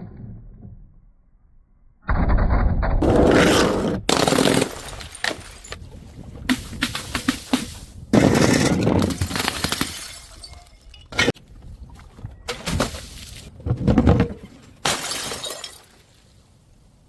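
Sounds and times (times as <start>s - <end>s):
glass bottle smashing: 4.1s - 5.8s, 9.0s - 11.0s, 14.8s - 16.0s.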